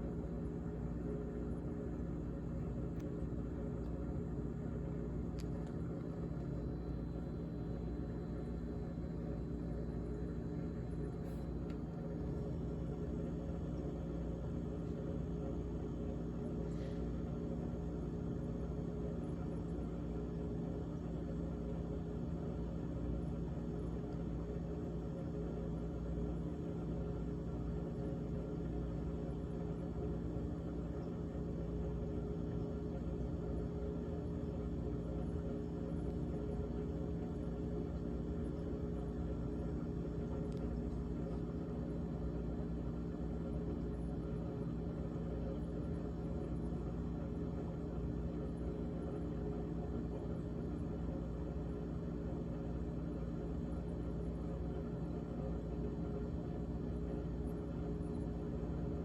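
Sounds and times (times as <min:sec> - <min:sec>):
refrigerator hum: 0:00.0 - 0:59.0
faint click: 0:05.3 - 0:06.1.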